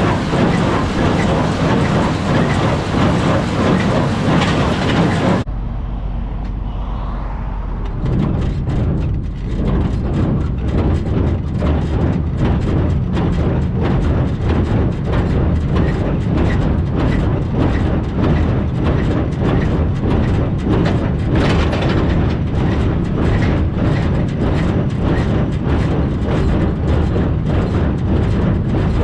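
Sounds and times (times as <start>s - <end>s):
tractor engine running under load: 0.0s - 5.5s
baler mechanism clattering: 7.8s - 29.0s.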